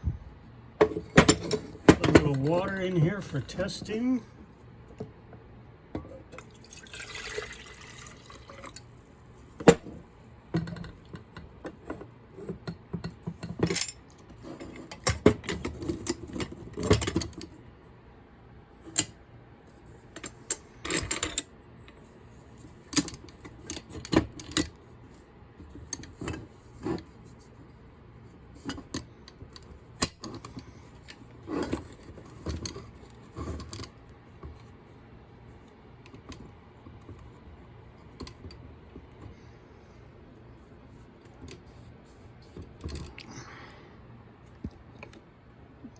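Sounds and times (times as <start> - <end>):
plastic and metal parts clattering: 0.8 - 4.0, 28.6 - 34.7.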